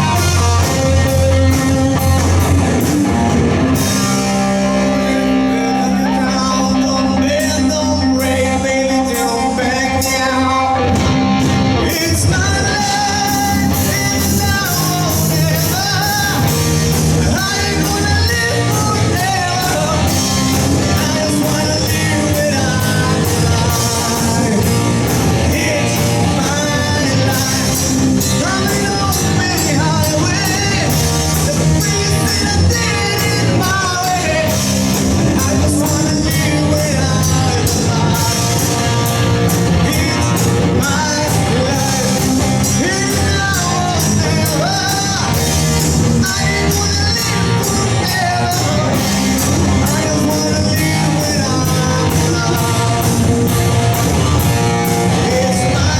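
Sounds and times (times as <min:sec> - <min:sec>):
bass guitar: 0:00.0 - 0:55.9
electric guitar: 0:00.0 - 0:55.9
person singing: 0:00.0 - 0:55.9.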